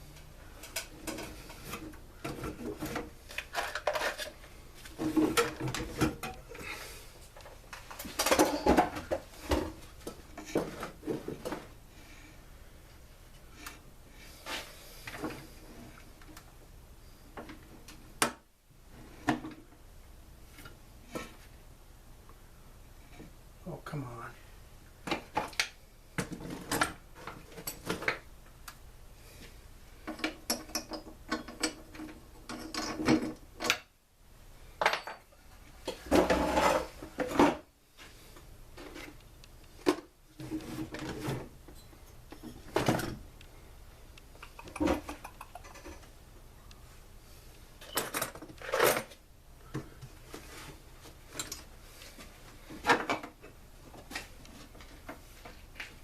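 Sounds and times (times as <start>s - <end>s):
metal parts clinking and scraping: 3.3s - 4.4s, 47.8s - 49.2s.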